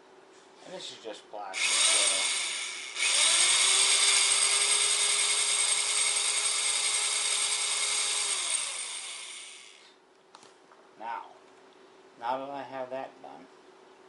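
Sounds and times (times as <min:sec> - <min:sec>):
electric drill boring plastic: 0:01.6 - 0:09.9.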